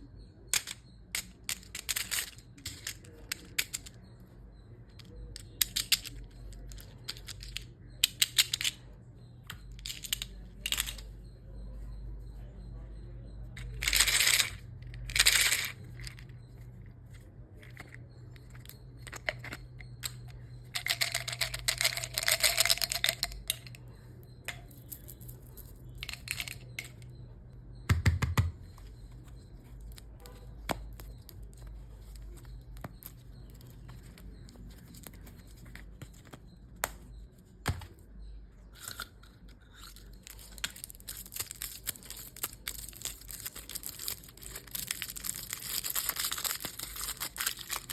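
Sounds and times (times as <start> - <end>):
plastic wrappers crinkling and tearing: 40.2 - 47.9.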